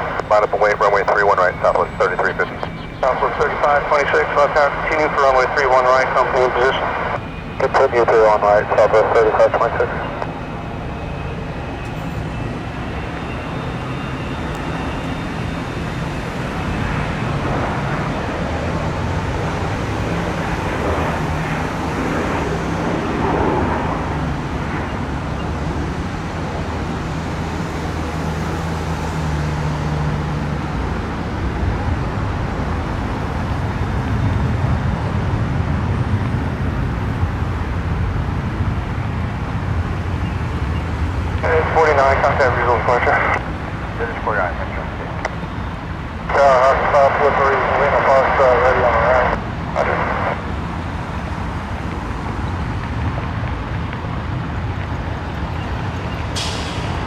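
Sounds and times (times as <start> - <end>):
traffic rumble: 0.0 - 57.0.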